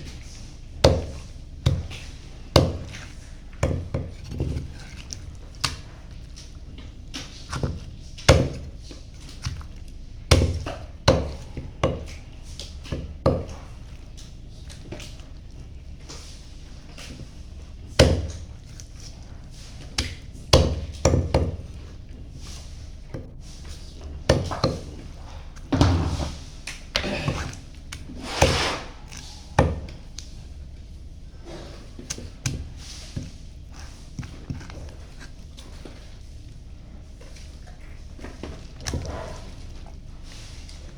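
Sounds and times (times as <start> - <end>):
knife chopping on cutting board: 0.8 - 5.0, 18.0 - 18.5, 24.3 - 25.0, 27.0 - 30.0
scraping on chopping board: 24.6 - 30.2.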